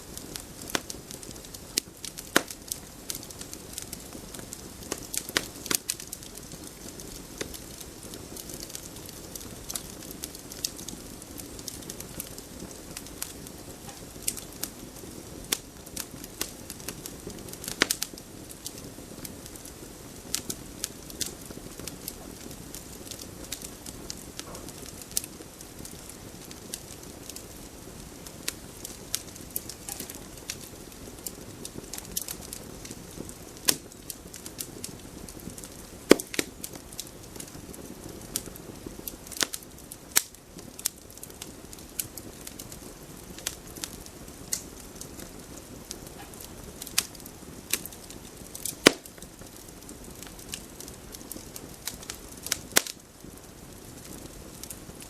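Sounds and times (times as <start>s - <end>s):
low rush of burning: 0.0s - 55.0s
campfire pops and snaps: 0.1s - 55.0s.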